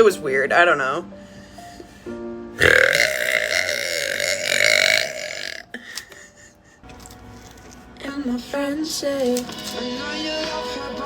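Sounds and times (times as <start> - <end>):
long loud burp: 2.6 - 5.7.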